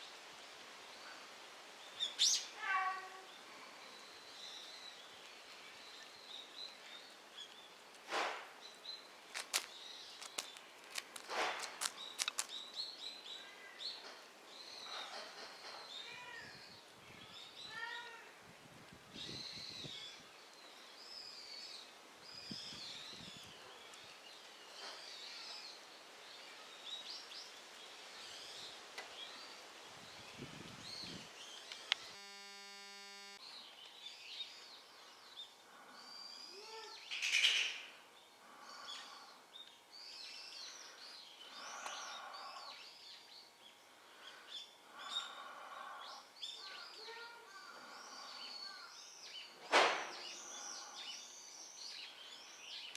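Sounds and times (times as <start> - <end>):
small birds chirping: 1.8 - 18.2, 19.1 - 52.9
electronic buzz: 31.9 - 33.4.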